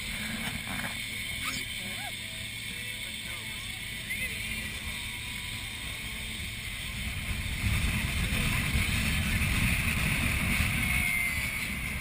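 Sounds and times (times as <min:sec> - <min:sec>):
boat moving through water: 0:00.0 - 0:12.0
wind buffeting microphone: 0:03.6 - 0:12.0.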